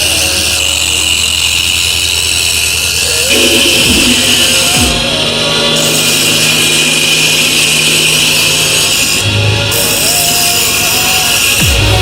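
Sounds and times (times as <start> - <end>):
electronic music: 0.0 - 12.0
deep bass note: 3.3 - 5.8, 11.6 - 12.0.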